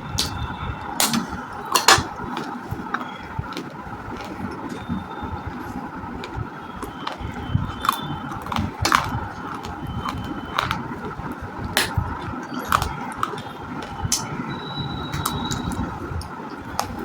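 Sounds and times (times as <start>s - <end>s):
crunching of clay being chewed: 1.8s - 14.4s.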